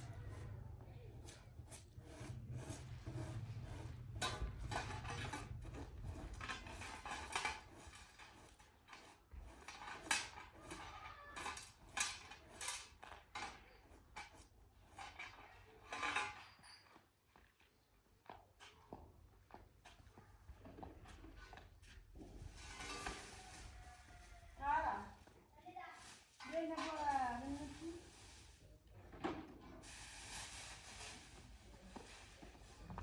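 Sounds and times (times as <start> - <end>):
dishes and pots clattering: 11.4 - 17.1.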